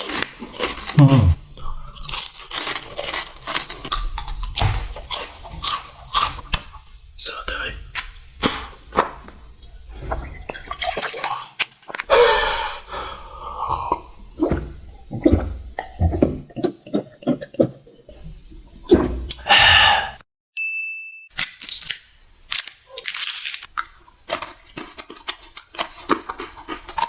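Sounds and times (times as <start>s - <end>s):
slurps: 0.0s - 3.8s, 9.7s - 20.2s
wet mouth eating sounds: 0.0s - 6.7s, 9.6s - 20.2s, 23.8s - 27.0s.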